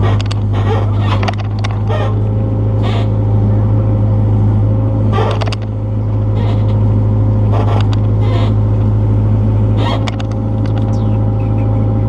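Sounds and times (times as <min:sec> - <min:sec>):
machine rattles and scrapes: 0:00.0 - 0:03.2, 0:05.1 - 0:09.0, 0:09.6 - 0:11.1
excavator diesel engine running: 0:00.0 - 0:12.0.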